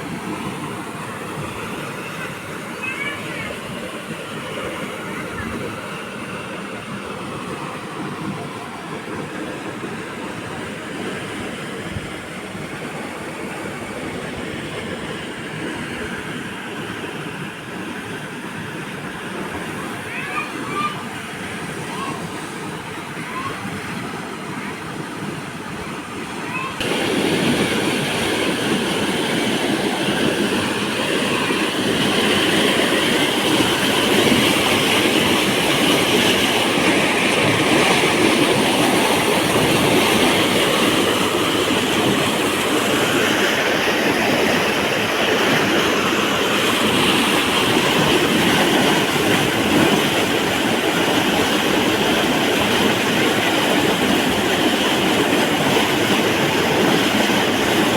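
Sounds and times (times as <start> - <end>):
dam water pouring: 26.7 - 57.9.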